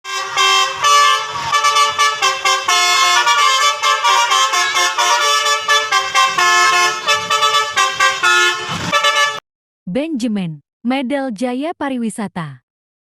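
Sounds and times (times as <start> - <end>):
multi-tone bus horn melody: 0.0 - 9.4.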